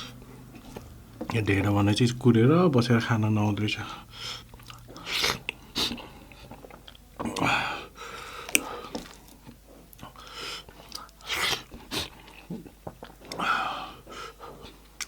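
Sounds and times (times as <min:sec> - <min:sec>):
chewing and mouth noises: 0:00.3 - 0:01.4, 0:04.3 - 0:15.0.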